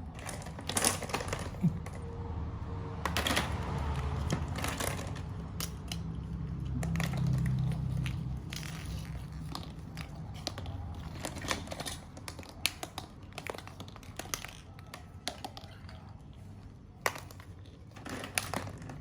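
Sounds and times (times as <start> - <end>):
small hard objects clicking and rattling: 0.0 - 2.0, 3.0 - 19.0.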